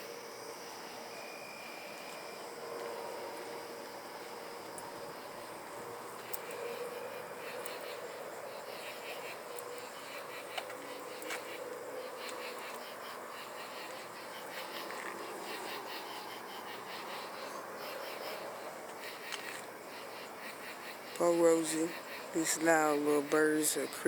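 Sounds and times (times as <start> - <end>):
faint steady tone: 0.0 - 24.0
night insects chirping: 0.0 - 24.0.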